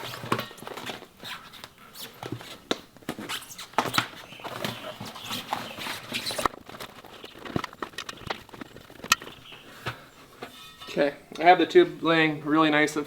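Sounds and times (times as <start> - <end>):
rubber rustling: 0.0 - 12.2
irregular clicks and knocks: 6.3 - 11.5.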